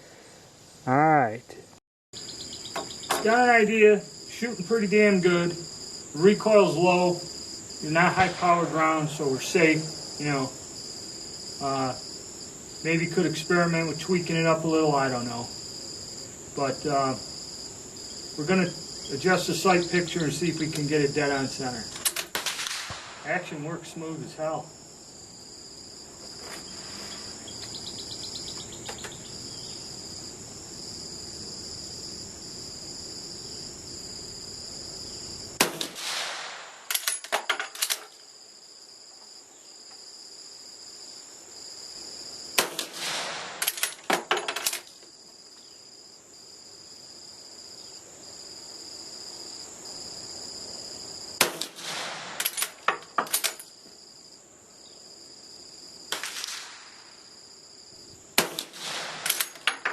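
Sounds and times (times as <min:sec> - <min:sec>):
crickets trilling: 0:00.0 - 0:59.9
rifle shots echoing: 0:08.0 - 0:08.9, 0:22.3 - 0:23.5, 0:35.6 - 0:36.9, 0:42.6 - 0:43.8, 0:51.4 - 0:52.8, 0:56.1 - 0:57.1, 0:58.4 - 0:59.6
rifle bolt metallic clicks: 0:36.9 - 0:38.2, 0:43.6 - 0:44.9, 0:52.4 - 0:53.7, 0:58.5 - 0:59.9.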